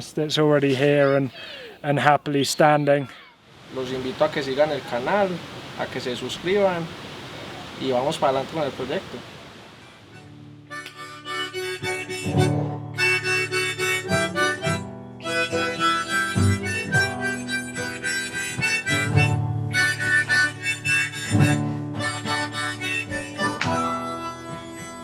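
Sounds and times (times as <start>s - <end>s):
harmonica background music: 10.2s - 25.0s.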